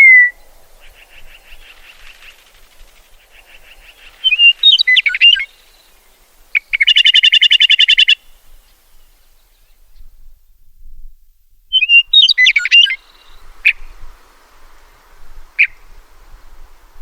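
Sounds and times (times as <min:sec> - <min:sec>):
lark singing: 0:00.0 - 0:02.6, 0:03.2 - 0:08.3, 0:11.7 - 0:13.9.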